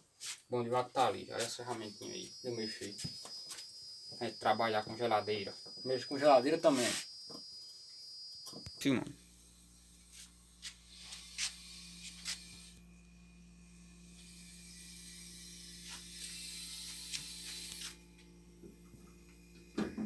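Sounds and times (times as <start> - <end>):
refrigerant gas hissing: 6.1 - 7.1, 8.8 - 13.0, 13.9 - 18.1
steady low hum: 8.8 - 20.0.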